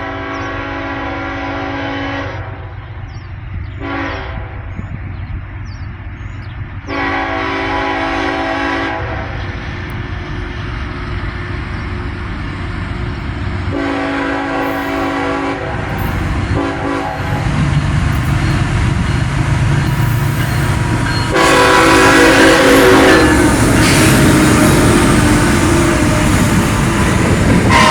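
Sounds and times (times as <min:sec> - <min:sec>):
locomotive horn blasts: 0:00.0 - 0:02.7, 0:03.8 - 0:04.7, 0:06.9 - 0:09.4, 0:13.7 - 0:17.6, 0:19.2 - 0:27.9
locomotive engine rumble: 0:00.0 - 0:27.9.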